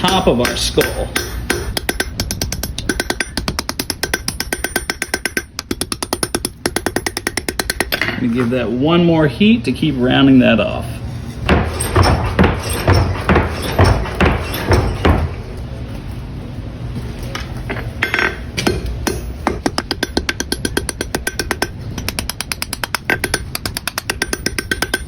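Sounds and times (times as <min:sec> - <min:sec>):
hammer striking steel on anvil: 0:00.0 - 0:08.3, 0:11.5 - 0:15.4, 0:18.0 - 0:25.0.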